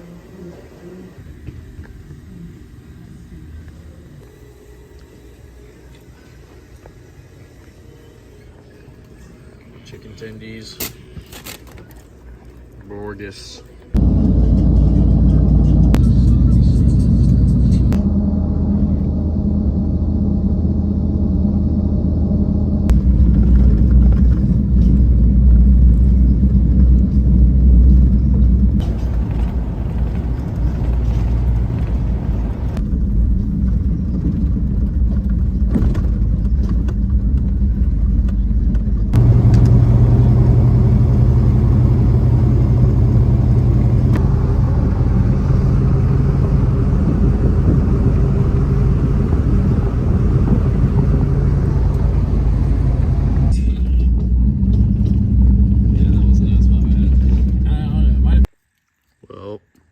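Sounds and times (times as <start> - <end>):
car engine and road noise: 13.8 - 58.5.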